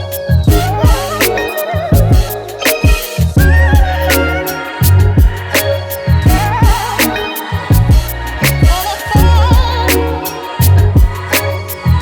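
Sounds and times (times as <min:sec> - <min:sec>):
lo-fi hip hop beat: 0:00.0 - 0:12.0.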